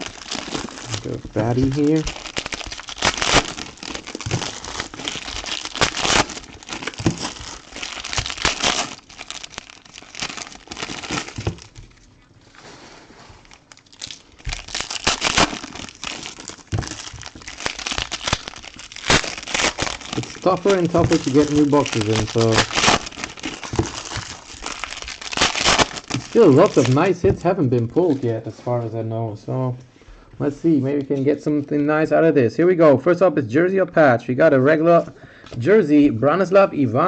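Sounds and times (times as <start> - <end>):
plastic wrapping crinkling: 0.0 - 28.4.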